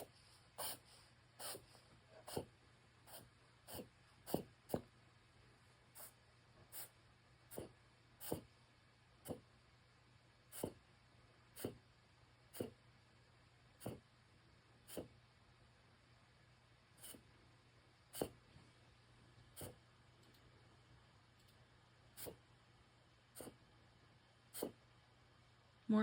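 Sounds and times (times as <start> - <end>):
dog reverse sneezing: 0.0 - 0.8, 1.4 - 1.6, 3.1 - 4.8, 24.5 - 24.8.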